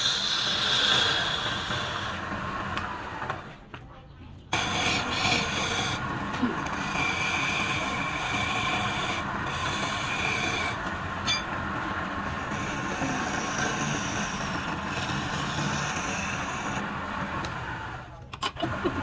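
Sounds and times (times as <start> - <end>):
turning tool scraping with squeal: 0.0 - 2.3, 4.6 - 11.6, 12.2 - 16.9
wood lathe running: 0.0 - 3.6, 4.5 - 19.0.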